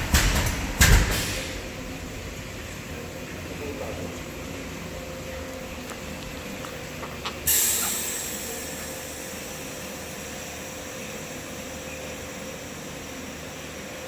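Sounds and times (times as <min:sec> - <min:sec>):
washing machine hum: 0:00.0 - 0:14.0
spray jet hissing: 0:07.4 - 0:09.8.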